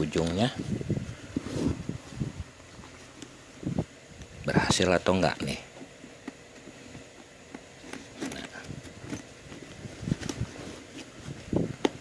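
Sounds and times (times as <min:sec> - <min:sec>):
zipper clicks and rustles: 0:06.0 - 0:12.0.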